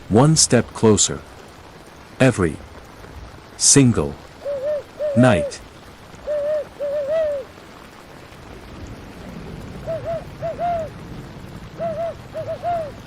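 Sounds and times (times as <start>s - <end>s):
rain hissing: 0.0s - 13.0s
owl hooting: 4.4s - 5.6s, 6.2s - 7.5s, 9.8s - 10.9s, 11.8s - 13.0s.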